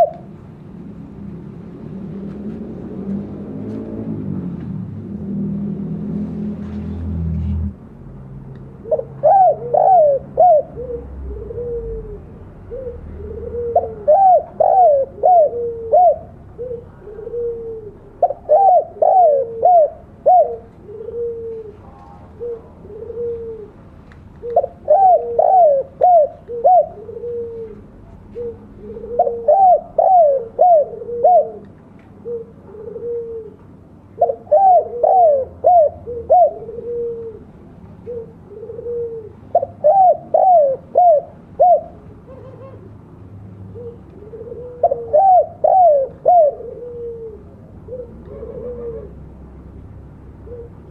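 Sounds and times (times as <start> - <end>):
dove cooing: 0.0 - 0.4, 8.8 - 43.0, 43.7 - 49.4, 50.3 - 50.9.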